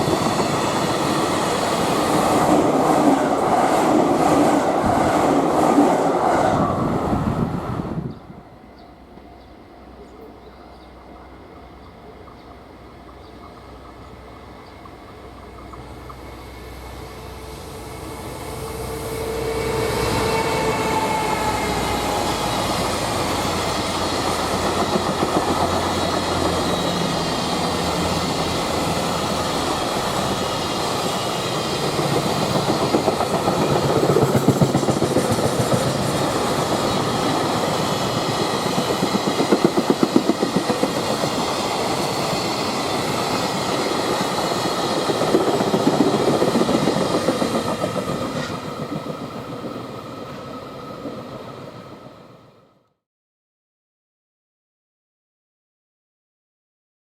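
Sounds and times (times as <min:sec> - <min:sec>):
locomotive whine: 0:00.0 - 0:52.8
train wheels clacking over rail joints: 0:29.6 - 0:49.8.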